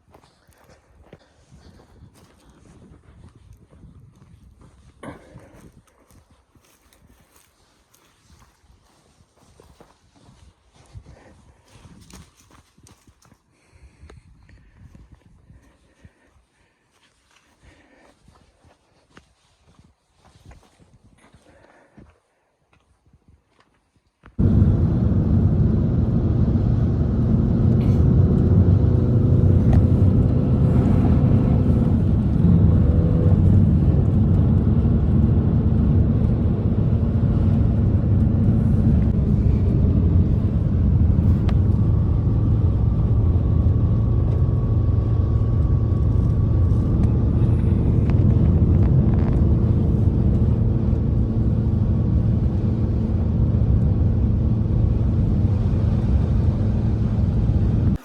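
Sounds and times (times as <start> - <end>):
strong blizzard wind: 24.4 - 58.0.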